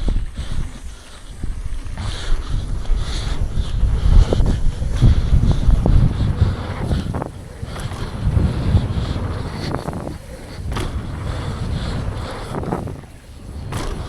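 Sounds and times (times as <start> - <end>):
tyres rumbling on dirt: 0.0 - 14.0
wind rushing over microphone: 0.0 - 14.0
bike knocking over bumps: 2.0 - 14.0.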